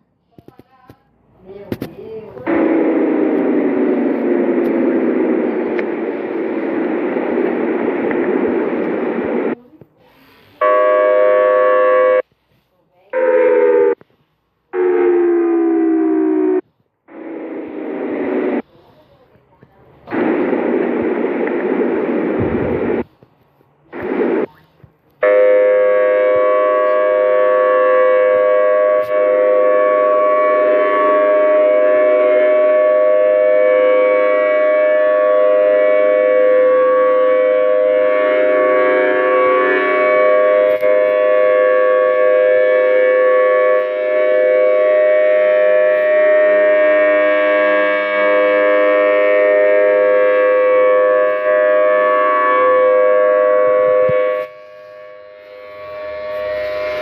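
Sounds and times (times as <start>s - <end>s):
warning siren steady chord: 2.4s - 9.6s, 10.6s - 12.3s, 13.1s - 14.1s, 14.7s - 18.6s, 20.1s - 23.1s, 25.2s - 57.0s.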